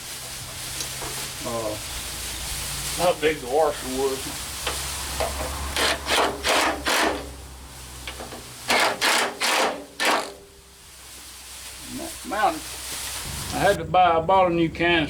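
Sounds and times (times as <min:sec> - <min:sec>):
hand tool rasping on metal: 0:05.2 - 0:07.4, 0:08.1 - 0:10.4.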